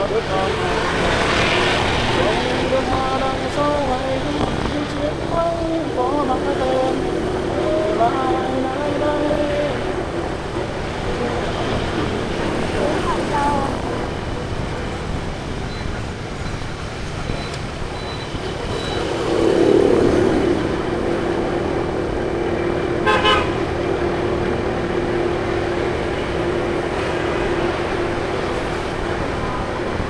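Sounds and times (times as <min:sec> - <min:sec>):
road traffic: 0:00.0 - 0:30.0
vehicle horn held tone: 0:23.0 - 0:23.6.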